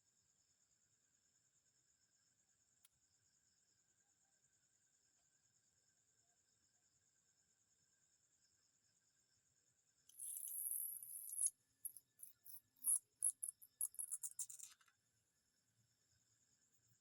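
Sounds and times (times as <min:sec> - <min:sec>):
insects chirping: 0:10.1 - 0:14.8.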